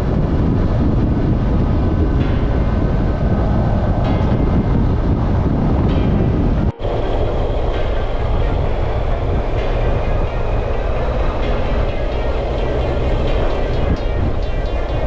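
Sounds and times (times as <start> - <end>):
wind rushing: 0.0 - 15.0.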